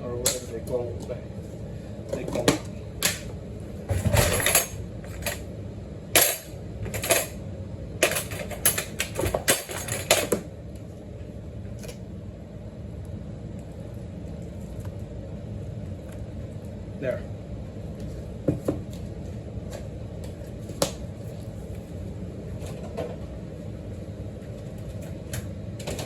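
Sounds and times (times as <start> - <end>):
food containers and utensils clattering: 3.9 - 5.4.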